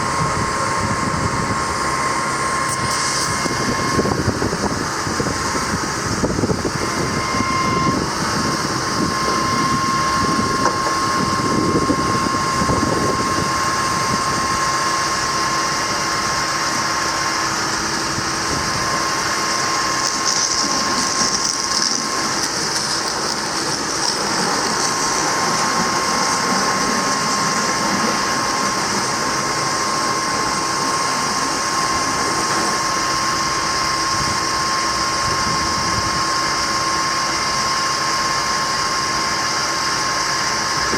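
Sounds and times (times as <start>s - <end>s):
thin steady whine: 0.0s - 40.9s.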